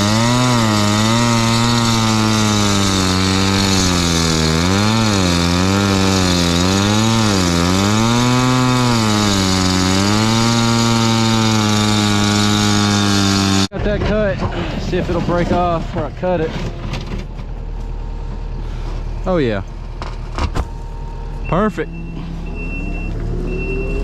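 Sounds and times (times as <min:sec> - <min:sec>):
concrete saw cutting asphalt: 0:00.0 - 0:13.7.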